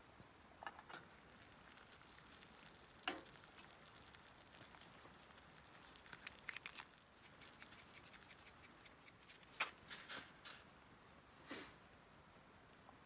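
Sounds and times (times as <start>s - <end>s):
soft rustle: 1.0s - 11.8s.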